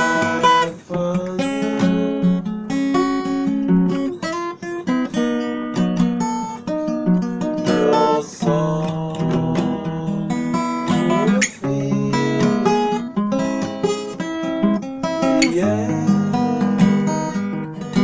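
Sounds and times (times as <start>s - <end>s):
acoustic guitar playing: 0.0s - 18.0s.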